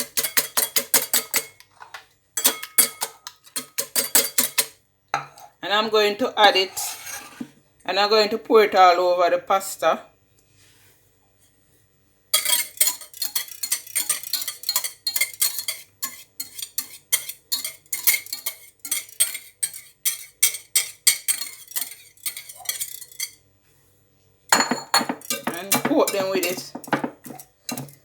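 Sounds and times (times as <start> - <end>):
utensil scraping a dish: 6.5 - 7.6, 12.4 - 23.4, 24.6 - 28.0.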